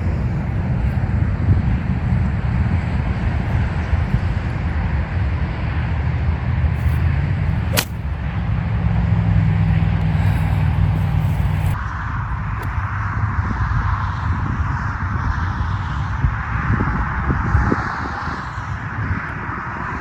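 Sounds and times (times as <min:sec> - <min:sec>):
sharp crack: 0:07.7 - 0:08.1.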